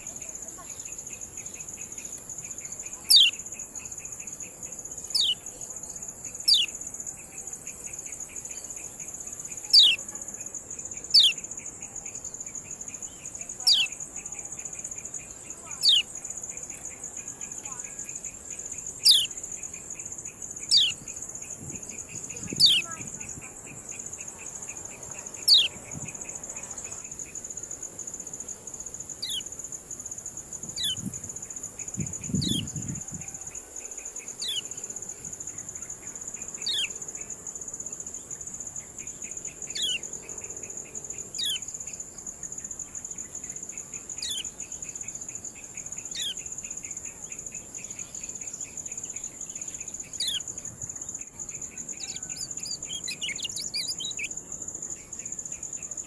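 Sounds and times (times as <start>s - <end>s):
high insect drone: 0.0s - 56.0s.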